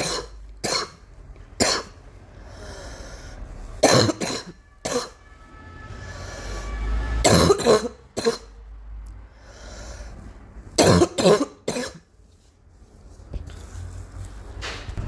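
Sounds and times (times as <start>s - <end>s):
girl coughing: 0.0s - 1.0s, 1.6s - 2.0s, 3.8s - 5.2s, 7.2s - 8.6s, 10.8s - 12.0s.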